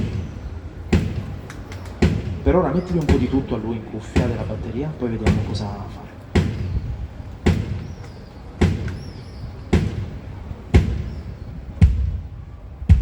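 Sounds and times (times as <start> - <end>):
drum hits booming: 2.0 - 2.5, 9.7 - 13.0.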